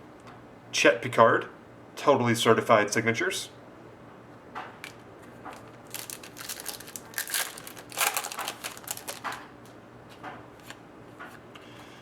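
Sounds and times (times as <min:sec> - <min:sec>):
cards clicking and rustling: 0:04.8 - 0:11.4.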